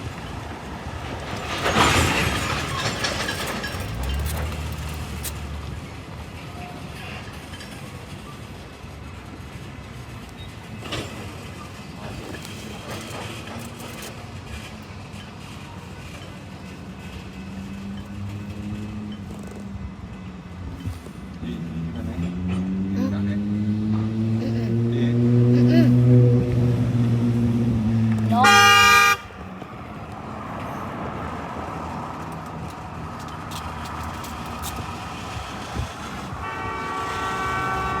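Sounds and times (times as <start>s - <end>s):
freight train rumbling: 0.0s - 38.0s
train horn chord: 28.4s - 29.4s, 36.4s - 38.0s.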